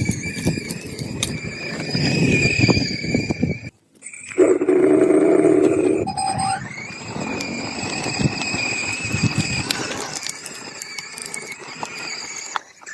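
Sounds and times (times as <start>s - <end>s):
mini bike engine revving: 4.1s - 12.9s.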